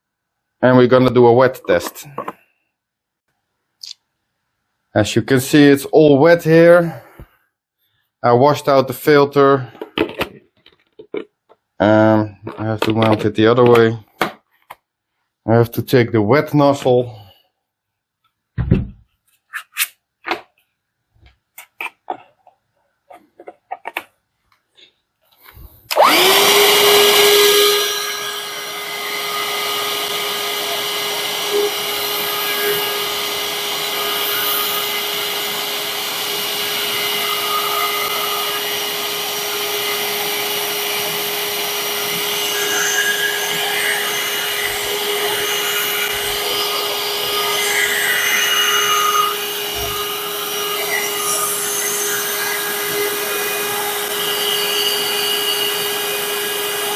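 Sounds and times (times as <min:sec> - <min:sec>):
handheld vacuum motor whine: 0:25.9 - 0:56.9.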